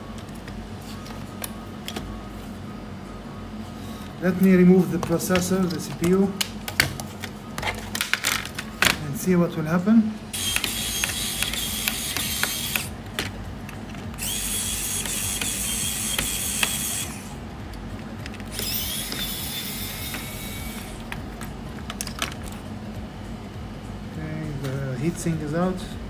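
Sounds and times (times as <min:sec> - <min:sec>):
electric screwdriver whirring: 0:10.3 - 0:13.0, 0:14.1 - 0:17.4, 0:18.4 - 0:21.2.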